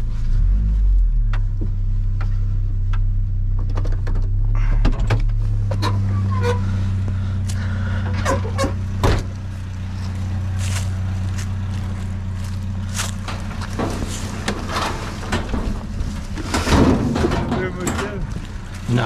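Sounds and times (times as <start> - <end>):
vehicle engine idling: 0.0 - 19.0
sharp knocks and clunks: 8.1 - 9.4, 13.0 - 18.4.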